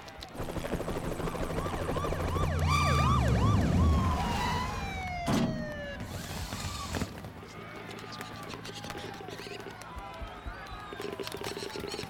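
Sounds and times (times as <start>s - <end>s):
siren wailing: 1.0s - 7.0s.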